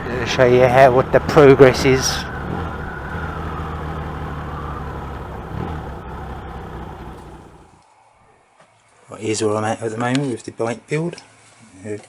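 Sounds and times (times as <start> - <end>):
motorcycle engine running: 0.0 - 7.8.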